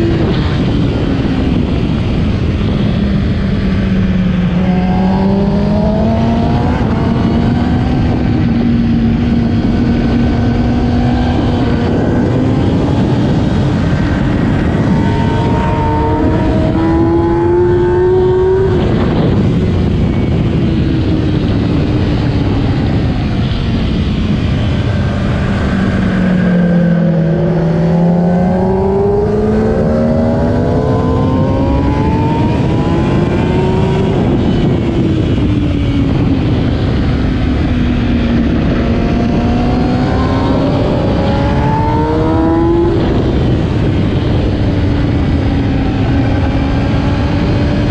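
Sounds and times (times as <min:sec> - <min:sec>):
motorcycle engine at race pace: 0:00.0 - 0:47.9
wind rush: 0:00.0 - 0:47.9.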